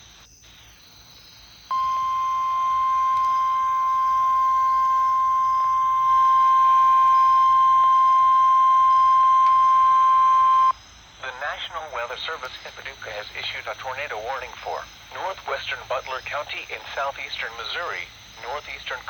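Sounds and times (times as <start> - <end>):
weather alert alarm tone: 1.7 - 10.7.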